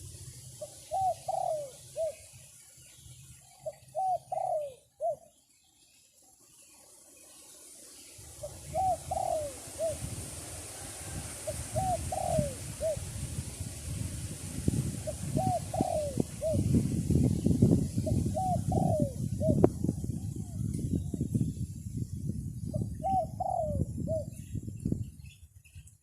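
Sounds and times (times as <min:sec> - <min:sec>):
dove cooing: 0:00.0 - 0:02.3, 0:03.6 - 0:05.3, 0:08.3 - 0:10.2, 0:10.8 - 0:13.2, 0:14.8 - 0:16.8, 0:18.0 - 0:20.6, 0:22.7 - 0:24.4
wind rumbling on microphone: 0:08.2 - 0:26.0.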